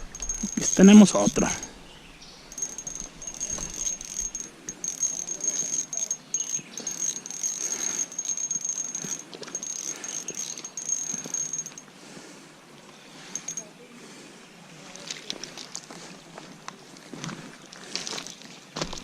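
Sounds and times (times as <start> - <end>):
fishing tackle clicking and rustling: 0.0 - 1.7, 2.5 - 11.9, 13.3 - 13.6.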